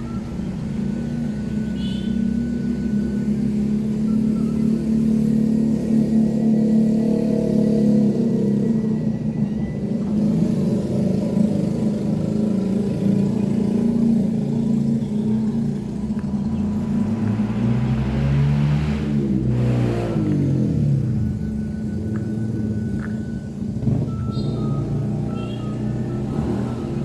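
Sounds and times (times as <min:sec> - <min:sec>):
engine running steadily: 0:00.0 - 0:27.0
vehicle passing by: 0:10.3 - 0:27.0.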